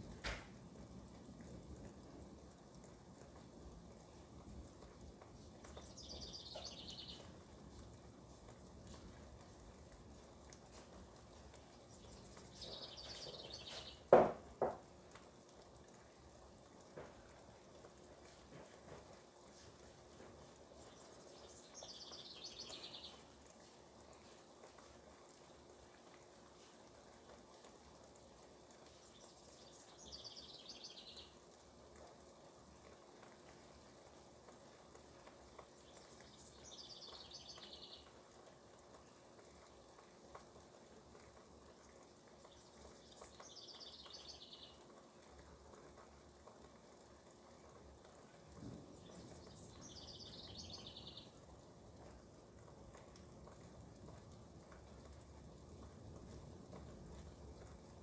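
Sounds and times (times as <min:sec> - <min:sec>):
faint hiss of rain: 0:00.0 - 0:58.0
songbird singing falling phrase: 0:05.8 - 0:07.3, 0:12.0 - 0:14.1, 0:20.9 - 0:23.2, 0:49.0 - 0:51.4.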